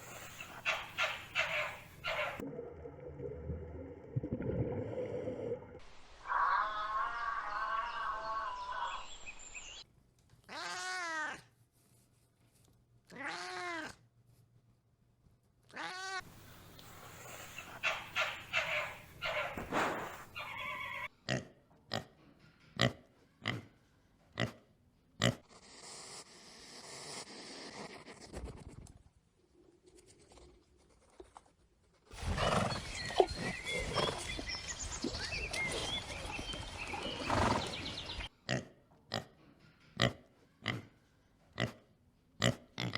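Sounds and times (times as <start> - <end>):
rising and falling animal calls: 6.2 - 9.8.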